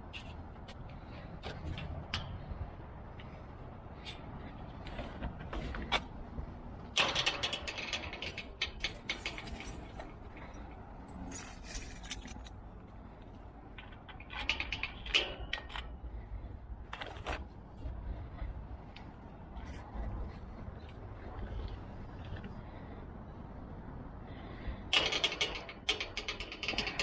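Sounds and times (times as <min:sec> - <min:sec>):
keys and lock hardware clinking: 0:07.0 - 0:10.2, 0:11.1 - 0:12.6.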